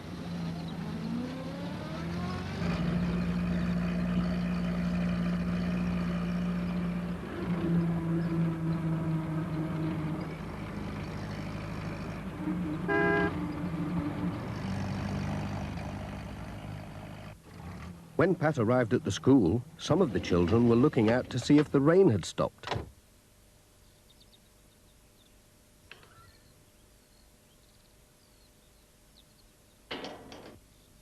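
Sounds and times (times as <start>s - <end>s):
van engine driving: 0.0s - 22.2s
short horn toot: 12.9s - 13.4s.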